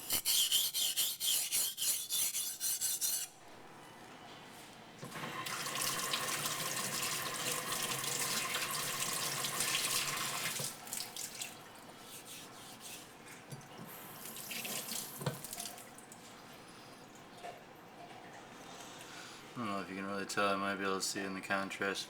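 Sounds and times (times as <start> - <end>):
water running from a tap: 5.2 - 11.6, 14.2 - 16.0.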